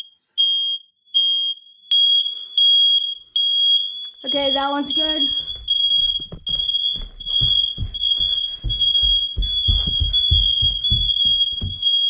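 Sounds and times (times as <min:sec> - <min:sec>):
shrill smoke alarms: 0:00.0 - 0:12.0
dull low thumps: 0:05.4 - 0:11.9.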